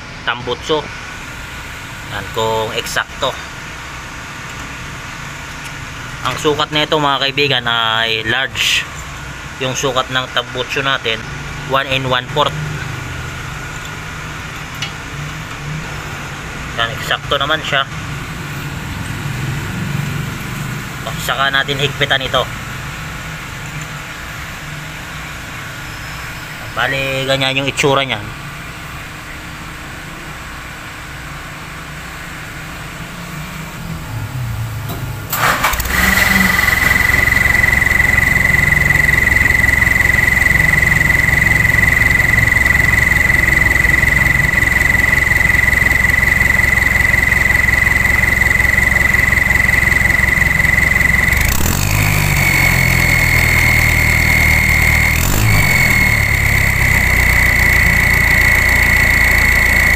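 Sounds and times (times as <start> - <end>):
diesel engine starting and idling: 0.0 - 59.9
engine throttle blips: 0.0 - 59.9
turbo whistle in exhaust: 25.1 - 27.6, 35.3 - 59.9.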